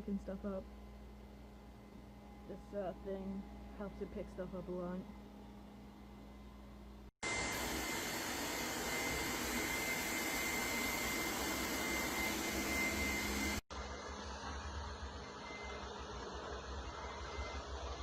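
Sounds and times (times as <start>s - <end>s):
robot vacuum running: 7.2s - 13.6s.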